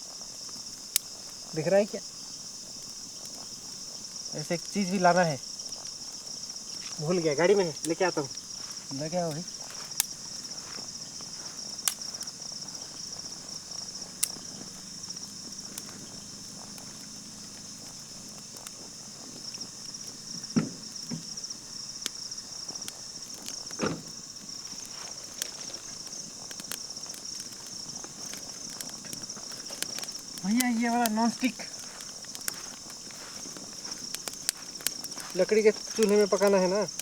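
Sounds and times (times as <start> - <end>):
insects chirring: 0.0 - 37.0
sharp clicks and cracks: 6.7 - 10.8, 11.4 - 12.7, 14.2 - 16.0, 22.0 - 37.0
dull thumps: 20.3 - 21.4.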